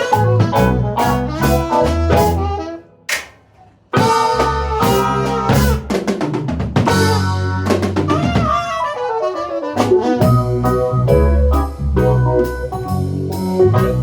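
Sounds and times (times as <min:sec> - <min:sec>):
jazz band playing: 0:00.0 - 0:14.0
loud busy drums: 0:03.1 - 0:09.0.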